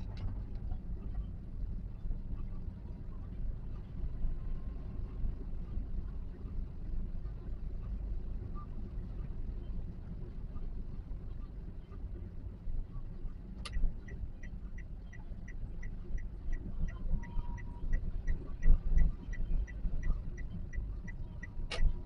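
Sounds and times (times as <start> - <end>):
road and engine rumble in car: 0.0 - 22.0
turn signal ticking: 13.3 - 22.0.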